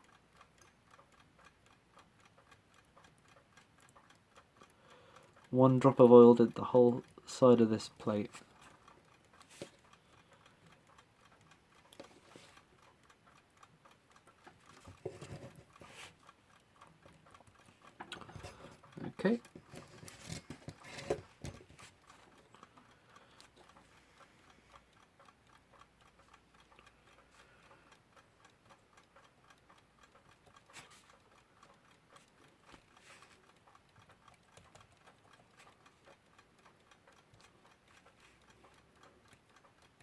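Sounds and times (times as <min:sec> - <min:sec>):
alarm clock ticking faintly: 0:00.0 - 0:40.0.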